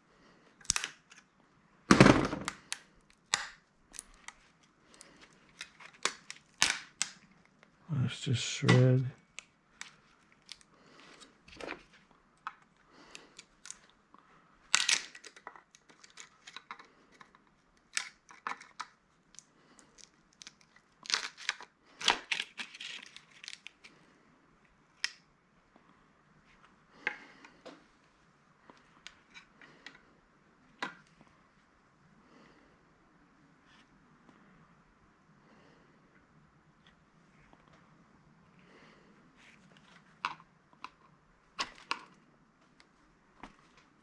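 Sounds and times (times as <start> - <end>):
plastic parts clicking and snapping: 0.6 - 1.3, 1.9 - 7.7, 14.7 - 23.9.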